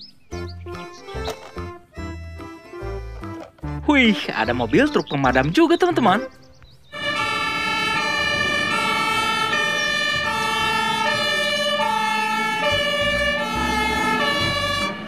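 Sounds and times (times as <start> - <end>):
toy siren buzzy tone: 6.9 - 15.0.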